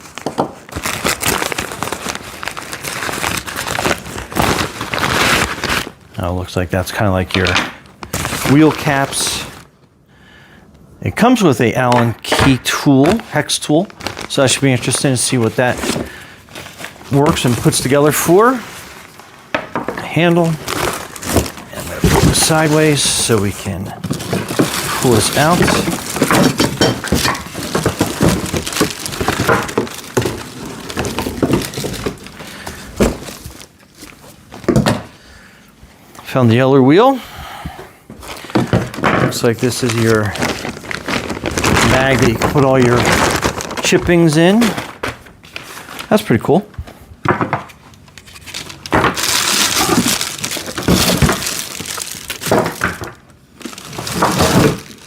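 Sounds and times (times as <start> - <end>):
packing material crinkling: 0.0 - 9.8, 11.3 - 34.9, 38.2 - 46.7, 47.8 - 55.0.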